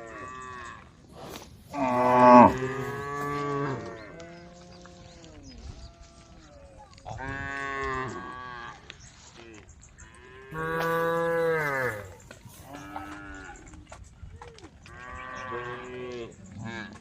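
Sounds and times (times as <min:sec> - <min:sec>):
cattle mooing: 0:01.7 - 0:04.2, 0:10.5 - 0:13.5.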